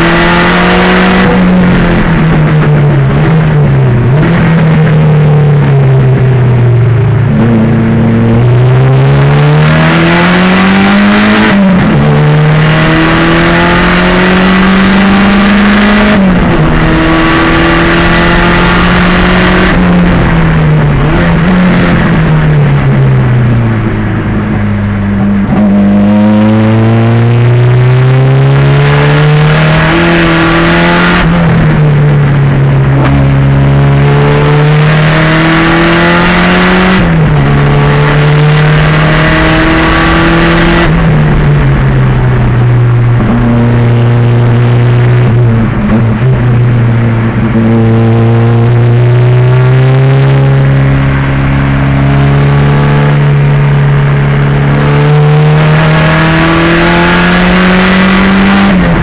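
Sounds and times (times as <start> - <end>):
race car engine accelerating: 0.0 - 59.0.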